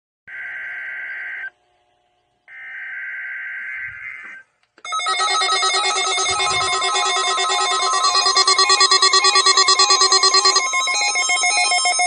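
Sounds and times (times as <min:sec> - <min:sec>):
screechy buzzing digital header tones: 0:00.3 - 0:01.6, 0:02.5 - 0:12.0
pulsing multi-pitched alarm tone: 0:02.5 - 0:12.0.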